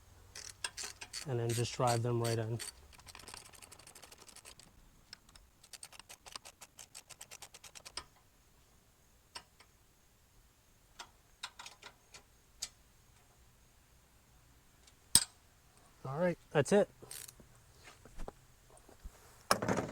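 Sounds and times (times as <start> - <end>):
ratchet wrench clicking: 0.4 - 4.7.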